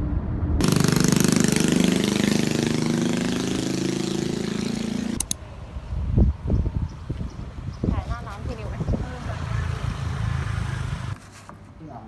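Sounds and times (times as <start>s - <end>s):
engine running loudly: 0.1s - 5.4s.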